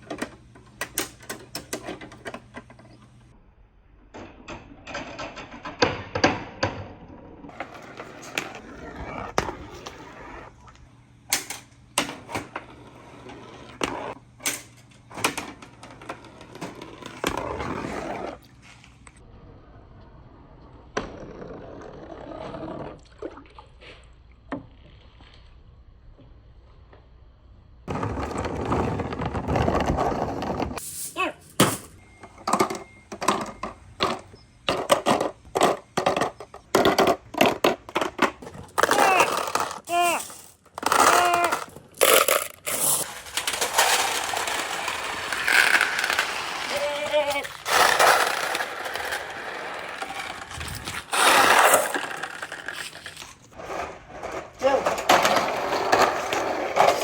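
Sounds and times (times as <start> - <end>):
marbles rolling on wooden run: 27.9 - 30.8, 34.0 - 57.0
marbles clicking on wooden track: 34.7 - 53.4
loud marble clatter: 34.7 - 57.0.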